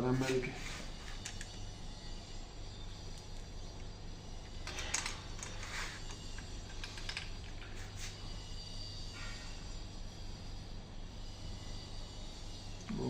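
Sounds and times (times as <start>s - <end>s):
steady low hum: 0.0s - 13.0s
metal parts clicking and scraping: 0.9s - 1.6s, 4.4s - 8.1s.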